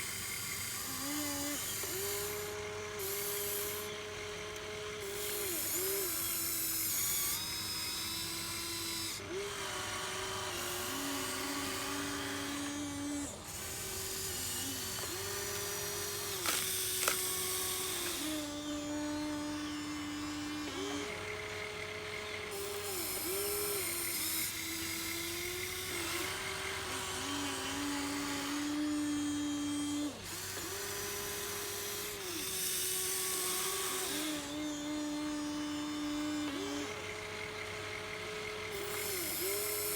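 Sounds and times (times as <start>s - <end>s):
small electric motors whining: 0.0s - 39.9s
sharp clicks: 16.4s - 17.4s.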